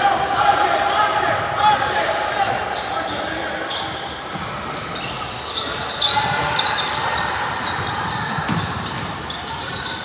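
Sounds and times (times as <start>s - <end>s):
sneaker squeaks: 2.6s - 10.0s.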